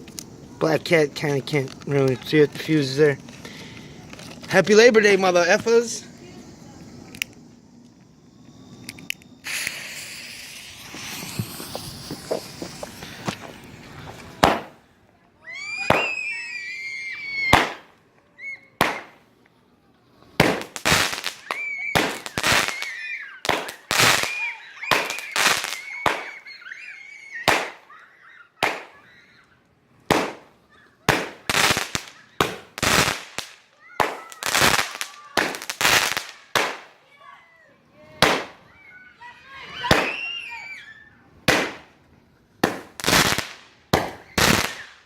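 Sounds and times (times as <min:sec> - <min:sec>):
firework shots: 0:00.0 - 0:14.9, 0:15.6 - 0:16.5, 0:17.2 - 0:18.0, 0:18.8 - 0:19.3, 0:20.3 - 0:26.6, 0:27.4 - 0:27.9, 0:28.6 - 0:29.0, 0:30.1 - 0:37.0, 0:38.2 - 0:38.7, 0:39.8 - 0:40.6, 0:41.4 - 0:42.0, 0:42.6 - 0:45.0
wavering high tones: 0:05.3 - 0:14.3.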